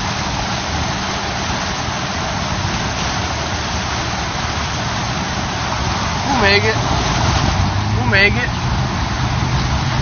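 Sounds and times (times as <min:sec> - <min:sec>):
low engine rumble: 0:00.0 - 0:10.0
water rushing and splashing: 0:00.0 - 0:10.0.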